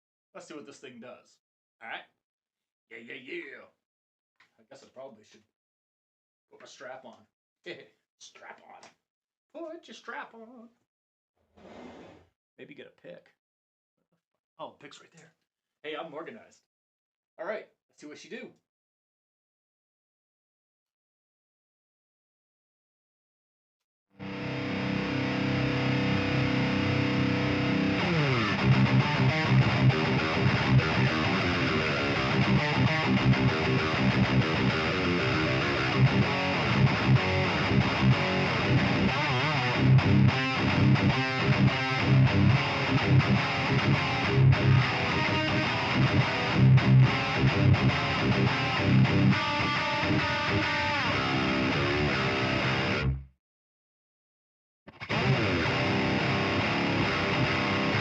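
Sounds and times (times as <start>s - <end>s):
distorted electric guitar chugs: 24.2s - 53.2s, 54.9s - 58.0s.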